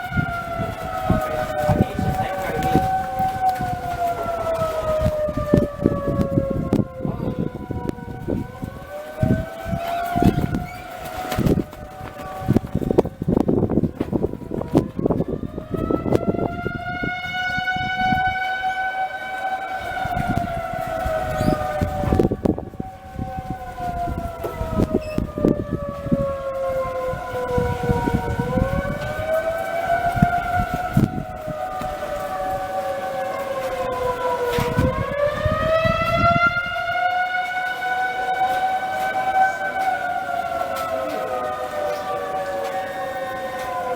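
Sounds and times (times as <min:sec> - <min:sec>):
tornado siren wailing: 0:00.0 - 0:43.9.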